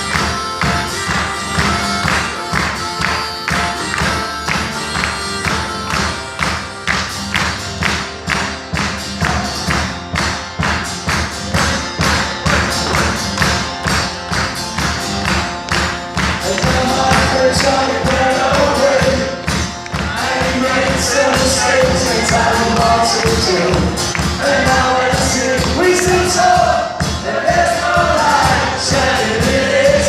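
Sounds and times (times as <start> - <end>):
held melody line: 0.0 - 30.0
live rock music: 0.0 - 30.0
strummed percussive beat: 0.0 - 30.0.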